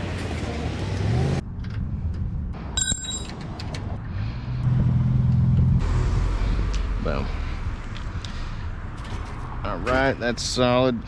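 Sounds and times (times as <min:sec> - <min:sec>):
vehicle engine rumbling: 0:00.0 - 0:10.6
metallic ring: 0:02.8 - 0:03.4.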